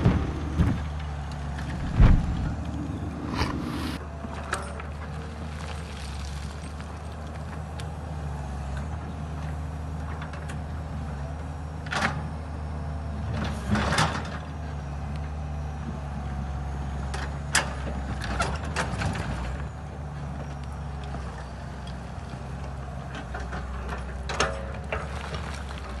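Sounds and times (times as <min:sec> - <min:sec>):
machine knocks and clatters: 0:00.0 - 0:04.0
excavator engine running: 0:00.0 - 0:06.4.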